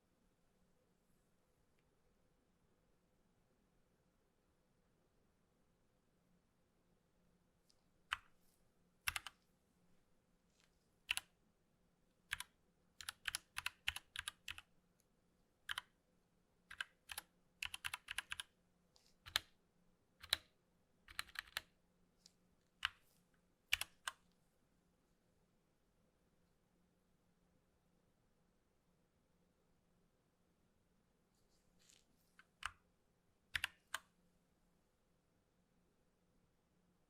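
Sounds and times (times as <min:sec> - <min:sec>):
mechanical keyboard clacking: 0:12.3 - 0:14.6, 0:16.7 - 0:18.5.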